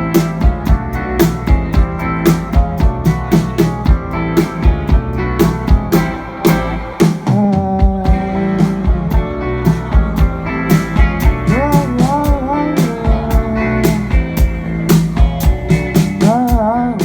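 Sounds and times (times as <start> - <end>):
live rock band playing: 0.0 - 17.0
person humming: 7.2 - 9.3, 11.4 - 14.4.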